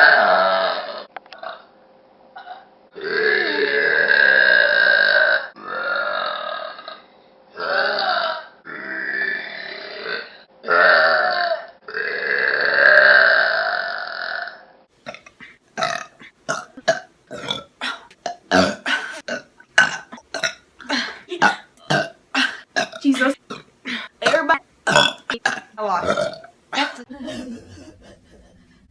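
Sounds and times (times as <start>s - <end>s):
woman burping: 2.4s - 6.3s, 15.0s - 27.4s.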